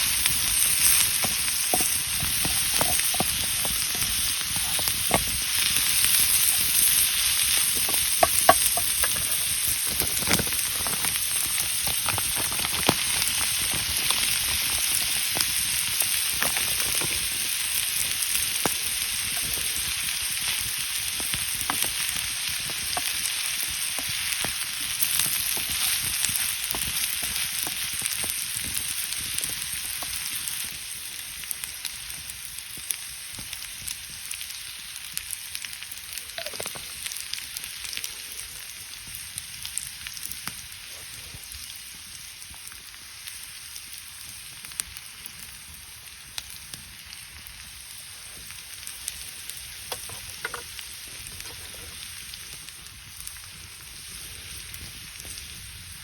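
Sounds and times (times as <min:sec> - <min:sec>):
food sizzling in a pan: 0:00.0 - 0:56.0.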